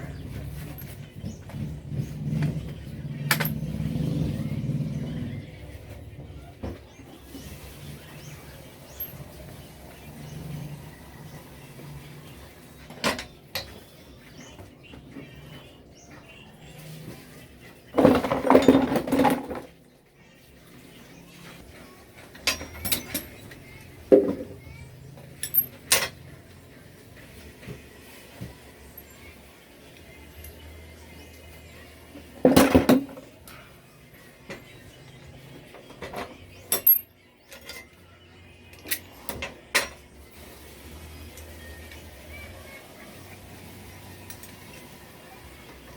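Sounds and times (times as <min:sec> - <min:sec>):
metal tools clanking and scraping: 0:00.0 - 0:05.2, 0:07.3 - 0:10.9, 0:17.9 - 0:19.8, 0:22.2 - 0:26.3, 0:32.2 - 0:38.0, 0:38.7 - 0:40.0
metal objects clanking together: 0:18.0 - 0:19.8, 0:22.3 - 0:24.6, 0:25.4 - 0:26.2, 0:32.4 - 0:33.3.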